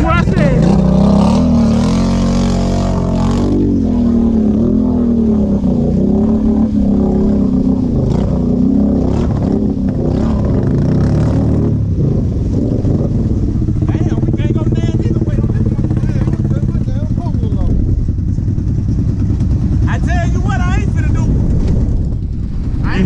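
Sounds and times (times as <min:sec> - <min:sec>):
atv engine revving: 0:00.0 - 0:23.0.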